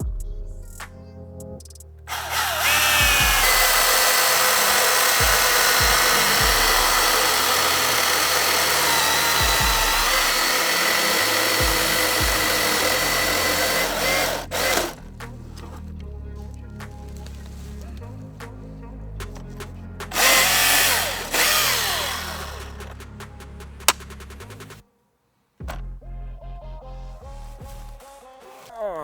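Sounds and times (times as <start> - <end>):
background music with low beat: 0.0 - 24.8, 25.6 - 28.9
chainsaw cutting wood: 2.1 - 15.8, 20.0 - 24.8.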